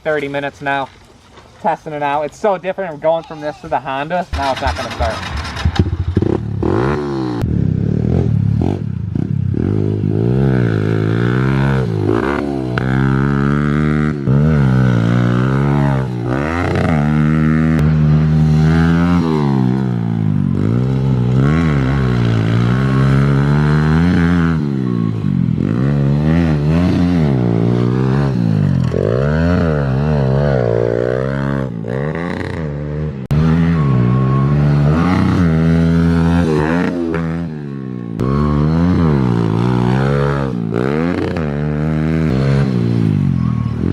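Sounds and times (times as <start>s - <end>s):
motorbike engine revving: 4.3s - 43.9s.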